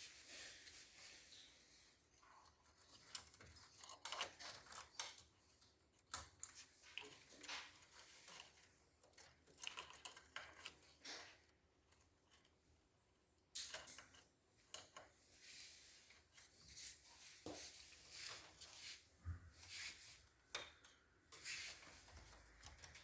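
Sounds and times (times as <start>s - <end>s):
small parts clicking and rustling: 2.2s - 12.6s, 20.2s - 23.0s.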